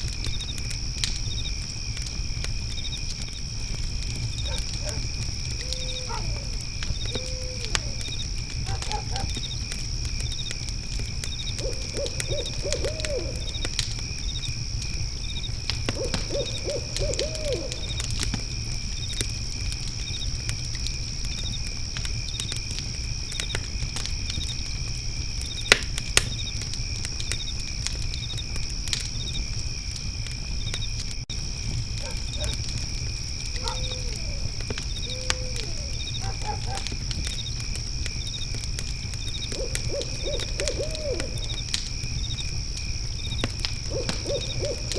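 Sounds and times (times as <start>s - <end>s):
crickets chirping: 0.0s - 44.9s
fire pit crackling and popping: 0.0s - 44.9s
low hooting calls: 4.4s - 9.4s, 11.6s - 13.8s, 15.8s - 18.2s, 32.0s - 37.0s, 39.5s - 41.6s, 43.9s - 44.9s.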